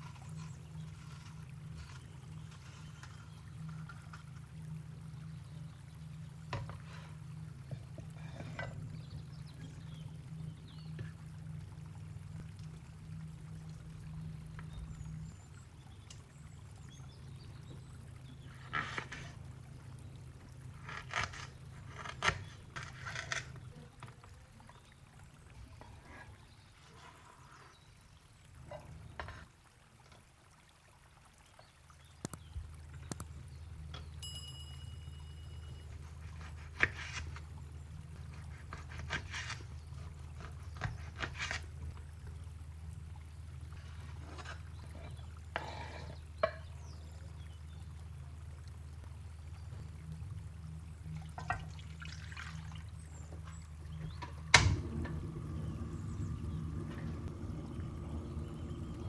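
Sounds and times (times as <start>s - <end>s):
liquid pouring and trickling: 0.0s - 59.0s
steady low hum: 32.1s - 59.0s.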